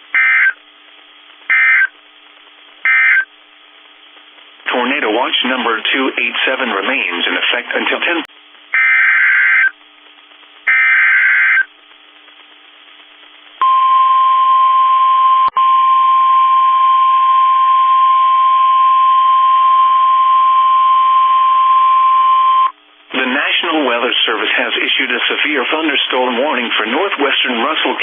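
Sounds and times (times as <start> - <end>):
buzzy two-tone data bursts: 0.1 - 0.6, 1.5 - 1.9, 2.8 - 3.3, 8.7 - 9.7, 10.6 - 11.7
steady warning alarm tone: 0.2 - 0.6, 1.5 - 1.9, 2.9 - 3.3, 8.8 - 9.7, 10.7 - 11.7.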